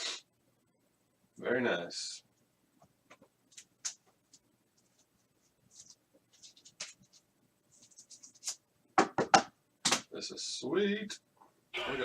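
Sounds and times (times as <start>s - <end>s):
trading cards scraping and rustling: 3.5s - 8.6s.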